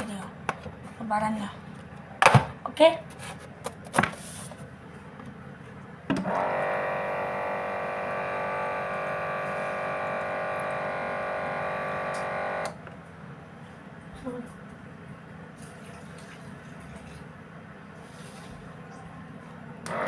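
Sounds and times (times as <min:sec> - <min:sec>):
machine buzzing hum: 0:06.2 - 0:12.9.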